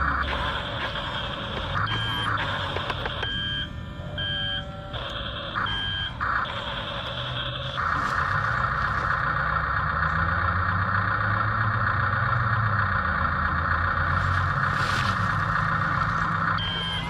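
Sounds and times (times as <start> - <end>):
low hum: 0.0 - 17.0
toy bulldozer motor whine: 0.0 - 17.0.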